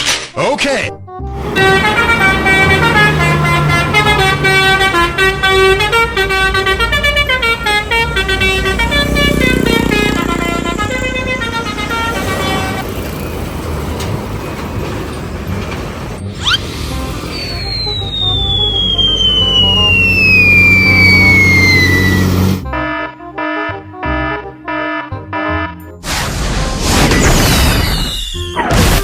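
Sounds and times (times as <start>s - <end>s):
multi-tone air horn melody: 1.2s - 12.8s, 16.6s - 25.8s
vehicle engine running: 1.3s - 23.0s.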